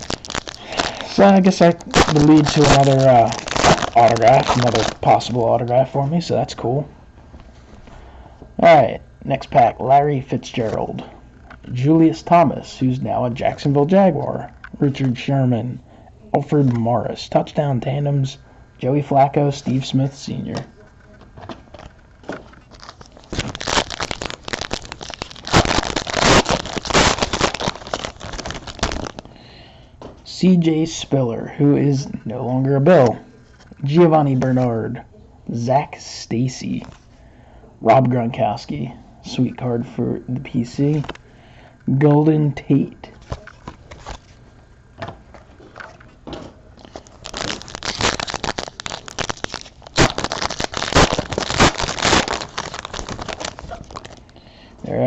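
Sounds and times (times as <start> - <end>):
plastic wrapper tearing and crinkling: 0.0 - 5.7, 21.7 - 29.3, 46.8 - 54.3.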